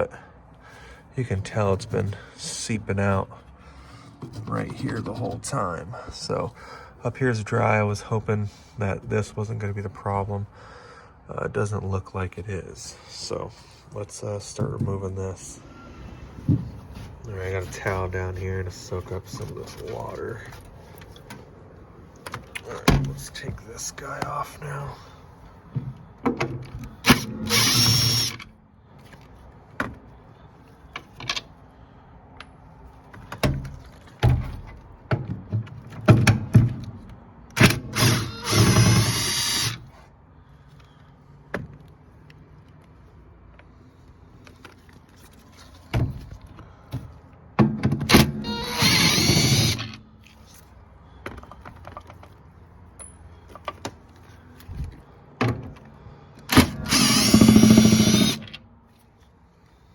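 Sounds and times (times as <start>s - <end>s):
power drill whining: 27.1s - 28.5s, 37.9s - 39.8s, 48.4s - 50.0s, 56.6s - 58.6s.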